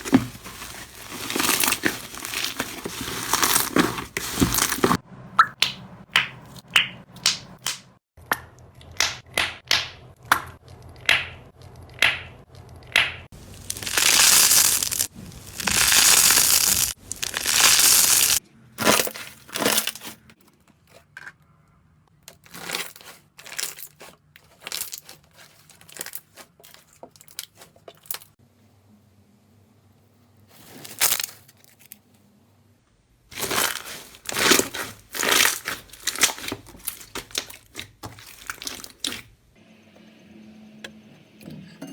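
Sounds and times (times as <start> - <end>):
slime crackling by hand: 0.0 - 5.0, 13.4 - 18.9, 33.3 - 39.3.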